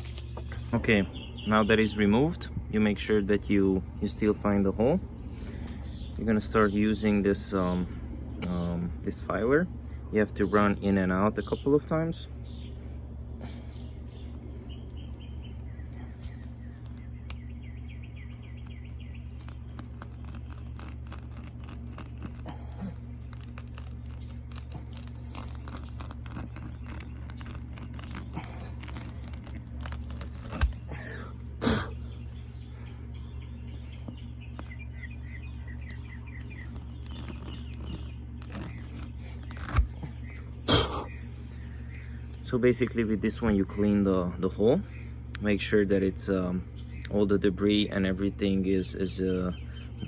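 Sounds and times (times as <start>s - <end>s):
birds chirping: 0.0s - 50.0s
steady low hum: 0.0s - 50.0s
reamer scraping clicks in tire: 16.3s - 22.5s.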